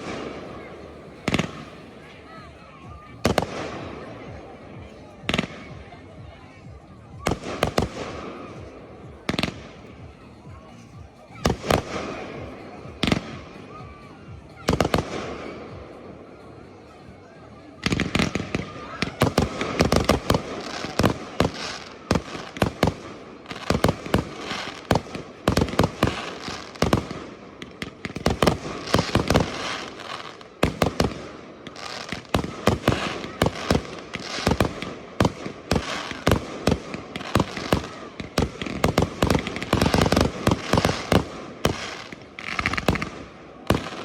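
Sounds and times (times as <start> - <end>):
fireworks bangs: 0.0 - 5.8, 7.1 - 9.8, 17.8 - 44.0.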